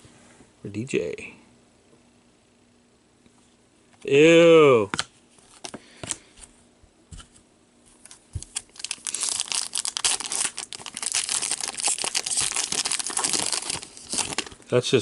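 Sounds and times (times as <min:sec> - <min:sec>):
foil wrapper tearing and crinkling: 0:08.0 - 0:14.6.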